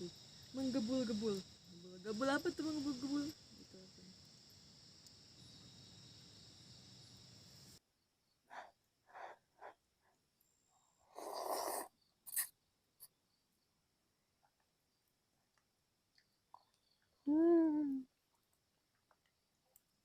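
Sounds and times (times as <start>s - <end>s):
crickets chirring: 0.0s - 9.8s, 10.4s - 13.8s, 16.2s - 18.1s
breathy mouth sounds eating: 11.0s - 12.5s.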